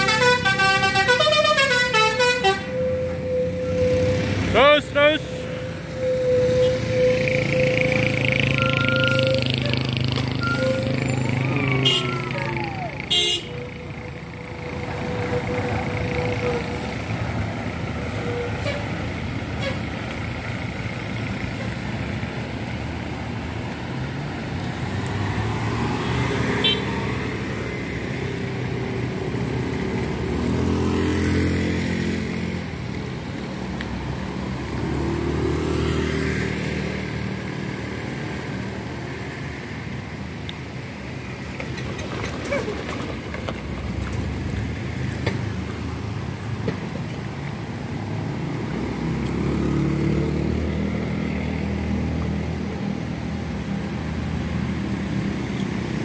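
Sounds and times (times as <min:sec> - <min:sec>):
bus horns: 0:00.0 - 0:20.0, 0:26.4 - 0:27.2
buses driving past: 0:00.0 - 0:56.0.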